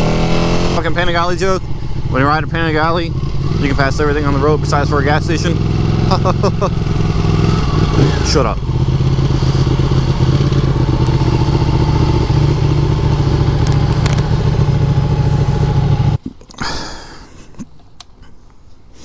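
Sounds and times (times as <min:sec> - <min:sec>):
motorcycle engine running: 0:00.0 - 0:16.2
short clatter: 0:13.6 - 0:14.4.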